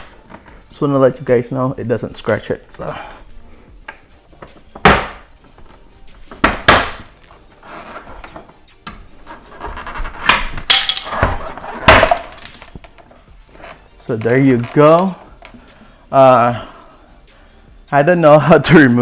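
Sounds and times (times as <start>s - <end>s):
plastic tool scraping: 7.6s - 8.5s, 9.2s - 15.3s.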